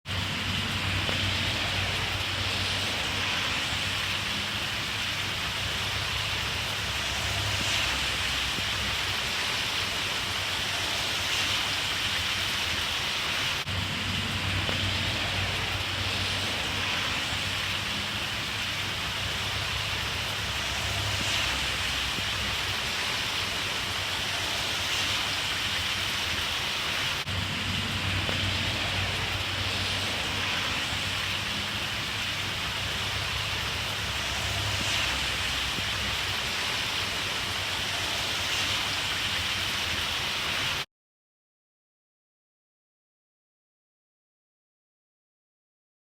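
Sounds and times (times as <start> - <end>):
faint low rumble: 0.1 - 9.2, 13.7 - 23.0, 27.3 - 36.6
steady hissing rain: 0.1 - 40.9.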